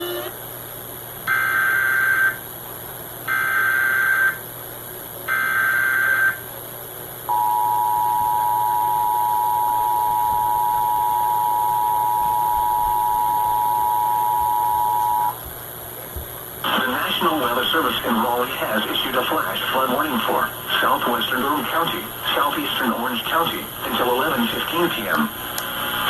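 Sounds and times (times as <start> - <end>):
two-tone attention signal: 0.0 - 0.3, 7.3 - 15.4.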